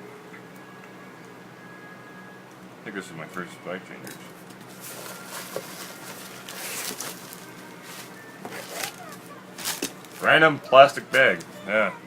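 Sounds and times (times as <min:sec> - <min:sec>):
plastic bag rustling: 0:04.6 - 0:10.4.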